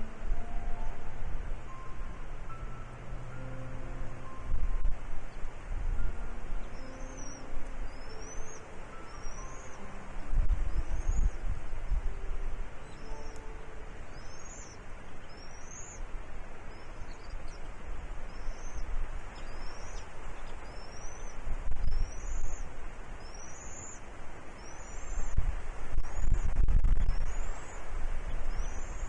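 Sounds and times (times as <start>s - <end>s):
wind noise on microphone: 0.0s - 29.0s
bird upward-sliding chirp: 6.0s - 11.5s, 12.1s - 16.0s.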